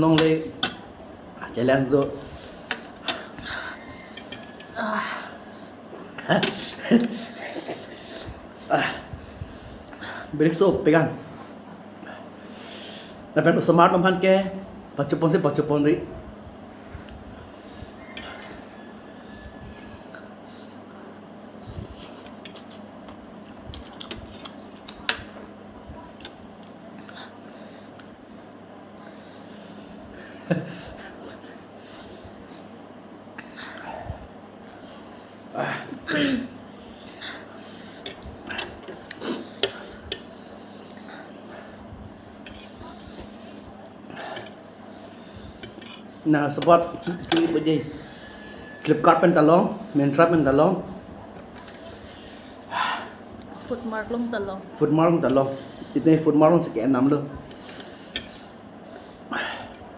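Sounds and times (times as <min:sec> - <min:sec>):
utensils clinking against bowl: 0:04.0 - 0:04.8, 0:42.4 - 0:43.3, 0:45.6 - 0:47.6.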